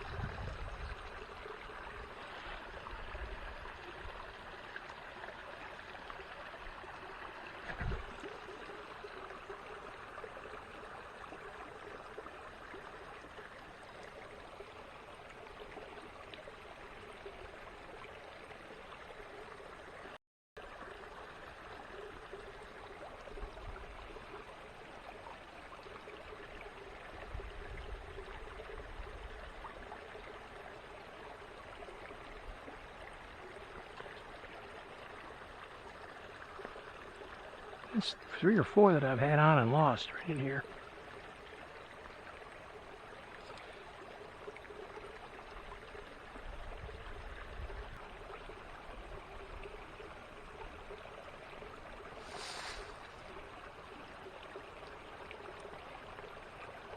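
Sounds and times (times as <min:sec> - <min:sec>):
wind rumble on microphone: 0:00.0 - 0:01.4, 0:07.7 - 0:08.2, 0:46.4 - 0:48.2
creek trickling: 0:00.0 - 0:56.9
short low thump: 0:07.7 - 0:08.1.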